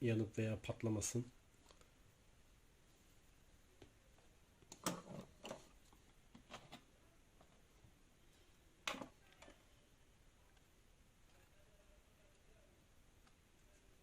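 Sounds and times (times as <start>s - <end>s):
faint handling clicks and knocks: 3.8s - 7.7s.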